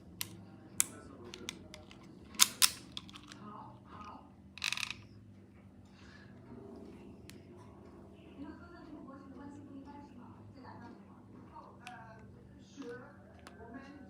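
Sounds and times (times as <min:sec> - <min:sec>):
revolver metallic clicks: 0:00.2 - 0:03.4.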